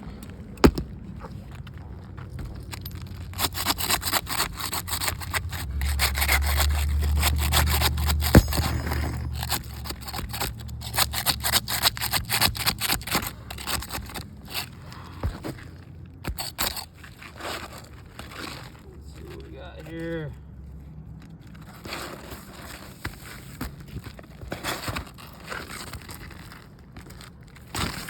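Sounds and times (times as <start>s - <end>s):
tool rasping under shingles: 1.5s - 18.8s
low hum: 5.1s - 10.9s
sharp knock: 8.1s - 9.5s.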